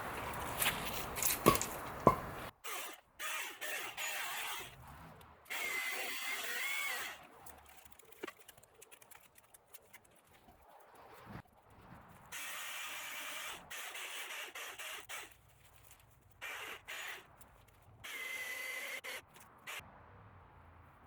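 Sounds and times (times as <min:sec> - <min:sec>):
chainsaw cutting wood: 0:00.6 - 0:04.8, 0:05.5 - 0:07.3, 0:12.4 - 0:15.4, 0:16.4 - 0:17.3, 0:18.0 - 0:19.8.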